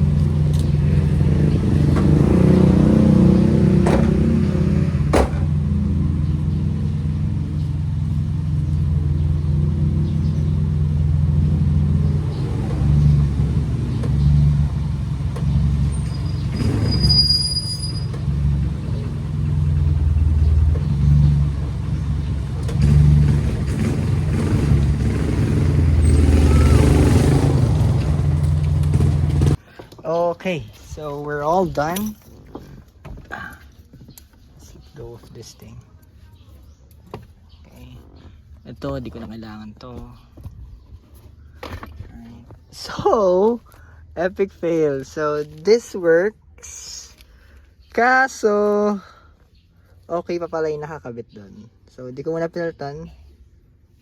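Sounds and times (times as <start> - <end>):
car engine idling: 0.0 - 29.6.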